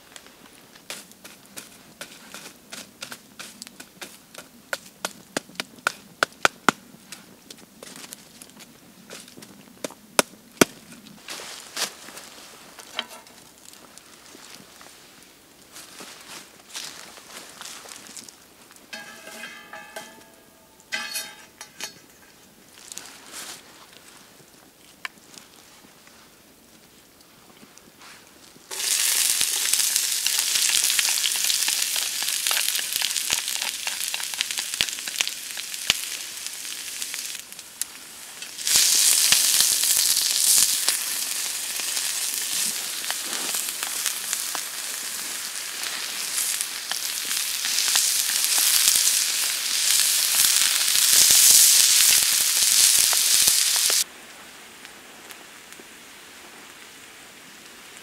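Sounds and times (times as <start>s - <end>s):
food sizzling in a pan: 28.7s - 54.1s.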